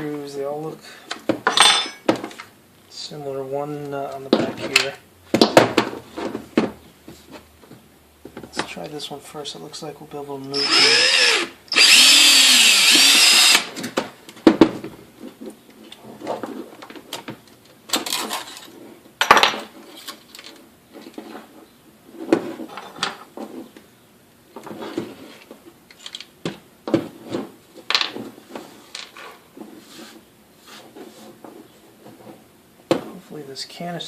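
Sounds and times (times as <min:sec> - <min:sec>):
tools and screws clinking on bench: 0:01.4 - 0:02.1.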